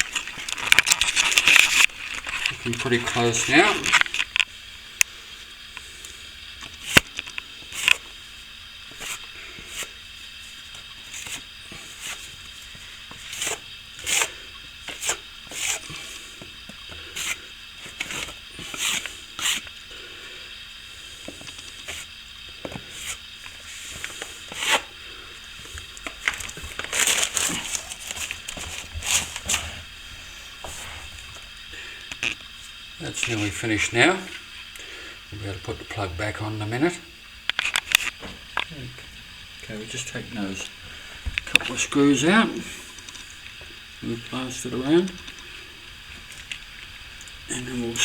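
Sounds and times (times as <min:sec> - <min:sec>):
plastering tool scraping plaster: 0:13.1 - 0:16.4, 0:21.3 - 0:24.9.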